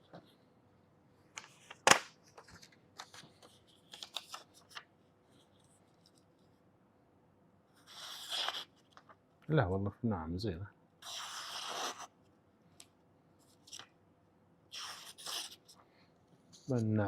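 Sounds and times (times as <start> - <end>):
knife slicing paper: 7.8 - 8.8, 11.0 - 12.1, 14.7 - 15.6.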